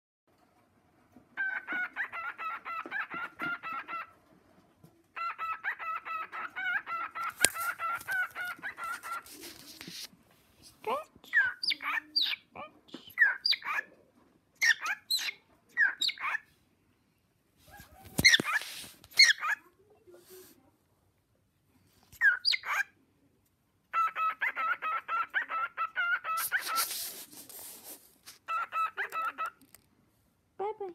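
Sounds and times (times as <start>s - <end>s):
pet bird calling: 1.4s - 4.1s, 5.2s - 9.8s, 11.3s - 13.9s, 14.6s - 16.5s, 17.7s - 19.6s, 22.2s - 22.9s, 23.9s - 27.7s, 28.4s - 29.8s.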